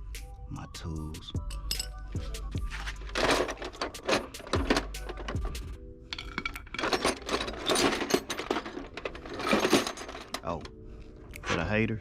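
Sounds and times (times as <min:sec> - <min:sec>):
metal tools clinking in toolbox: 0:01.5 - 0:02.0, 0:02.7 - 0:10.7.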